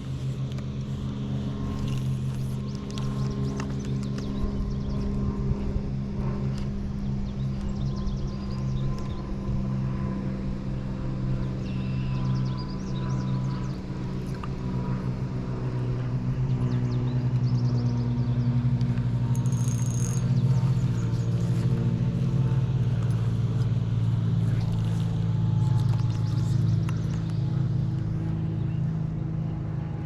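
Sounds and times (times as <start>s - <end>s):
motor humming: 0.0s - 30.0s
small birds chirping: 19.3s - 29.0s.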